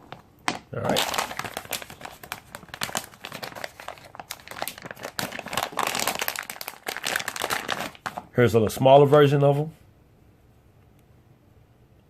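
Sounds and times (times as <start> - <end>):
plastic packaging crinkling: 0.0 - 8.3.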